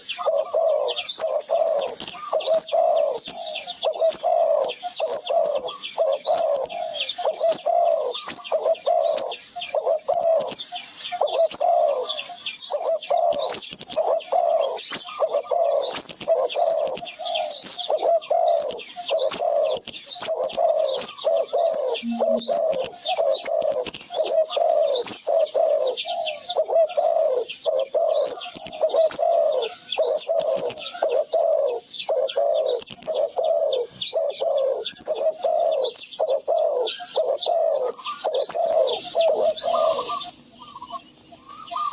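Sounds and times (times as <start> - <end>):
bird cooing calls: 0.0 - 41.9
high bird chirps: 21.8 - 23.6.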